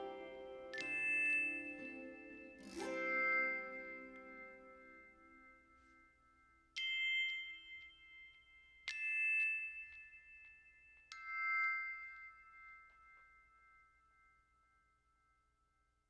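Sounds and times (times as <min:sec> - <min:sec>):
low sustained tone: 0:00.0 - 0:06.4
bell-like chime tones: 0:00.0 - 0:15.4.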